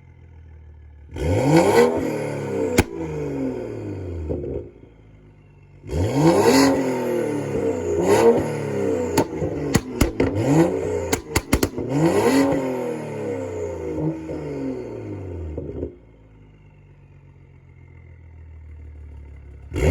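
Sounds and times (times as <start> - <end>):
car exhaust revving: 1.0 - 16.7, 19.6 - 19.9
exhaust pops and bangs: 2.8 - 3.2, 8.3 - 12.7.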